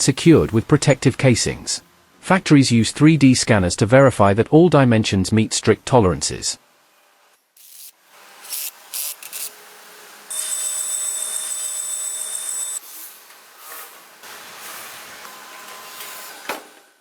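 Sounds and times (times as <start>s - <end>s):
tool hiss with high whine: 7.6s - 16.7s.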